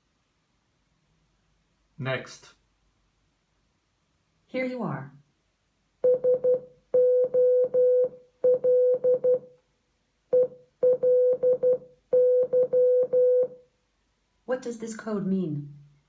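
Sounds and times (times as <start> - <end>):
morse code beeps: 6.0 - 9.4, 10.4 - 13.5.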